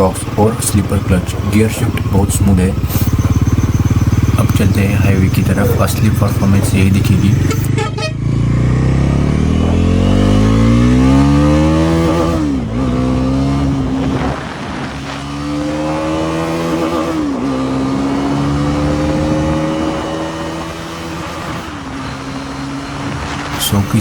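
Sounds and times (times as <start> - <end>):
motorcycle engine accelerating: 0.0 - 24.0.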